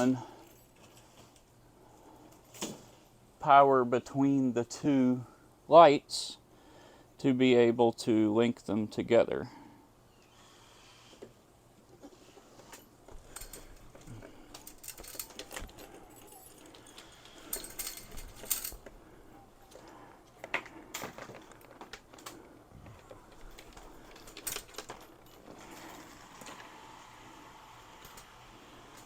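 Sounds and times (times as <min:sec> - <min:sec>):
metal chain clinking and rattling: 0:00.0 - 0:01.5, 0:12.5 - 0:26.7.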